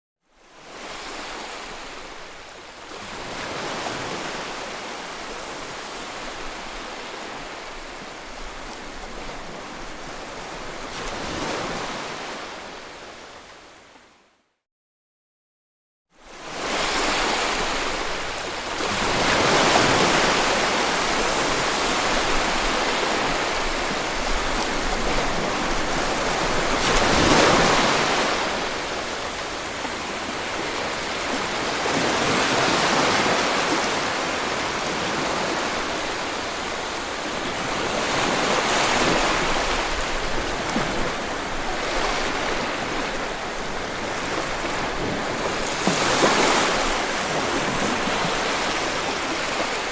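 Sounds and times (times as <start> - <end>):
ocean waves breaking on shore: 0.4 - 14.0, 16.2 - 49.9.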